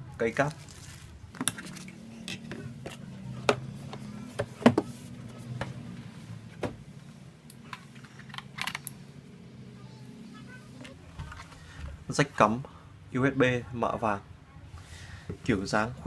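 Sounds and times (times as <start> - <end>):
clicks and knocks of handled parts: 7.5 - 9.0.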